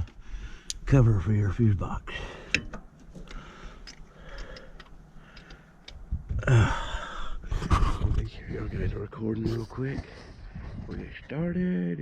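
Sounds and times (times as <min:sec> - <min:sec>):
tools clicking and tapping: 0:02.5 - 0:06.0
person speaking: 0:07.6 - 0:10.2.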